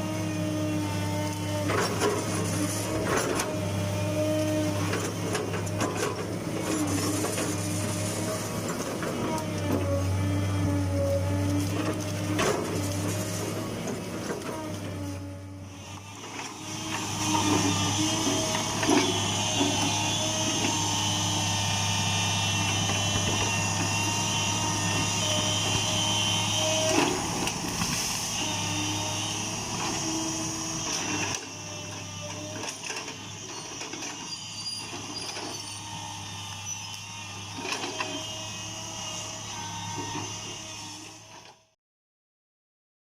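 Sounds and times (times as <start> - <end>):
excavator engine running: 0.0 - 34.2, 34.8 - 41.4.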